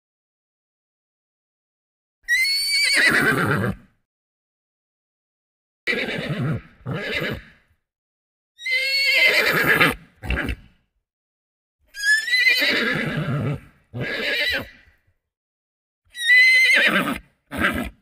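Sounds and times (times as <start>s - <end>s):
horse whinnying: 2.3s - 3.8s, 5.9s - 7.5s, 8.6s - 10.6s, 11.9s - 14.9s, 16.1s - 18.0s
horse breathy snort: 9.6s - 10.8s.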